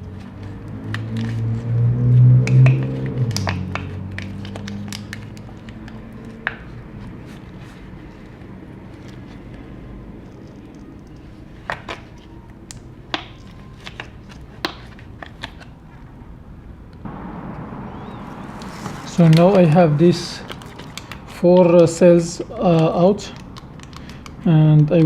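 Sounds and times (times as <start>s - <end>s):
low hum: 16.9s - 21.3s
light clicks and taps from tools: 22.4s - 25.0s.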